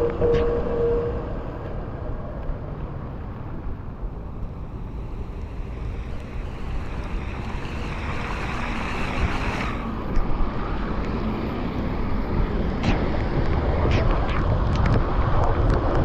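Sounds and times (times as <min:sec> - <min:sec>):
wind buffeting microphone: 0:00.0 - 0:16.0
bicycle road noise on wet streets: 0:01.0 - 0:16.0
hiss: 0:04.4 - 0:09.9.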